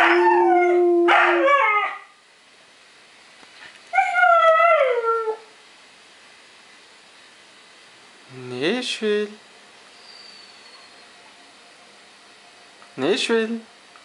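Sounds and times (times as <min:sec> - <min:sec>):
huskies howling: 0:00.0 - 0:02.1, 0:03.9 - 0:05.5.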